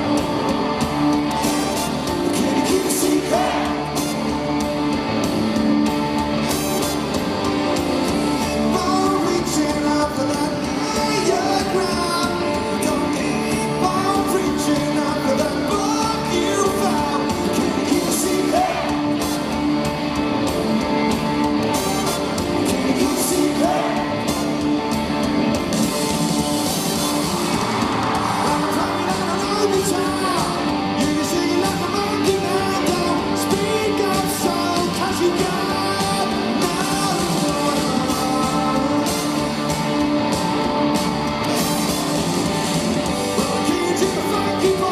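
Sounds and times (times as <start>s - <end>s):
live rock band playing: 0.0s - 44.9s
lead vocal singing: 2.2s - 4.2s, 8.4s - 19.5s, 22.2s - 24.6s, 27.7s - 39.8s, 43.4s - 44.9s.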